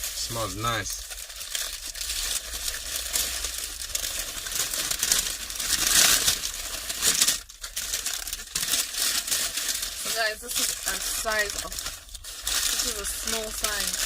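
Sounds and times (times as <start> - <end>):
food wrapping crinkling: 0.0 - 14.0.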